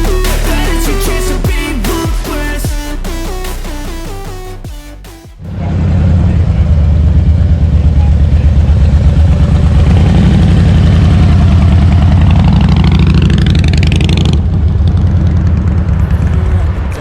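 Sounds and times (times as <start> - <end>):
motorcycle engine running: 4.2 - 17.0.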